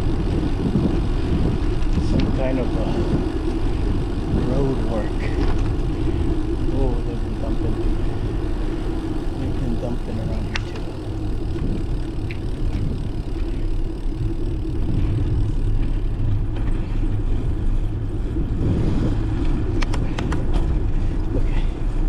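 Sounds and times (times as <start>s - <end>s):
wind and road noise: 0.0s - 22.0s
sharp clicks: 10.3s - 14.9s, 19.8s - 20.5s.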